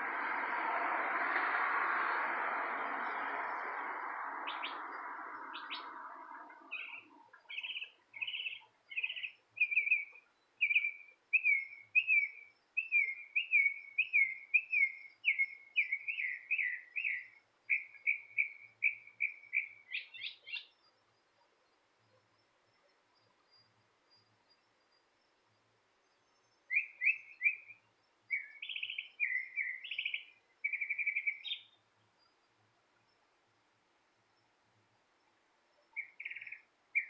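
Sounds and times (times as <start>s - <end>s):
rushing noise: 0.0s - 6.7s
songbird whistling: 4.4s - 5.9s, 6.7s - 20.8s, 26.7s - 31.8s, 35.9s - 37.0s.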